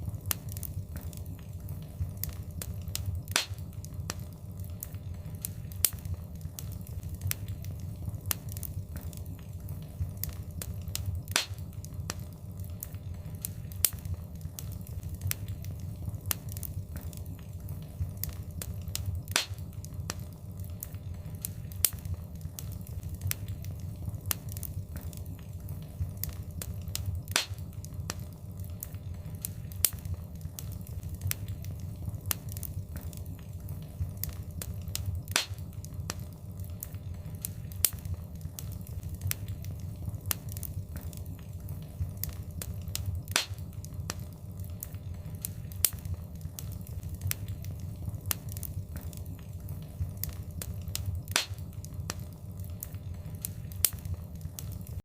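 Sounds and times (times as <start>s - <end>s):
low fire rumble: 0.0s - 55.0s
wood fire crackling: 0.0s - 55.0s
sharp fire pop: 3.3s - 3.7s, 11.3s - 11.6s, 19.3s - 19.7s, 27.3s - 27.7s, 35.3s - 35.7s, 43.3s - 43.7s, 51.3s - 51.7s.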